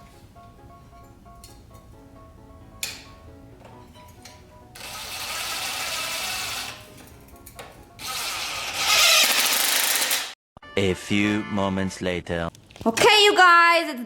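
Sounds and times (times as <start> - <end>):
background music: 0.0 - 9.2, 10.6 - 12.6
power tool running: 4.8 - 6.9, 8.0 - 10.4.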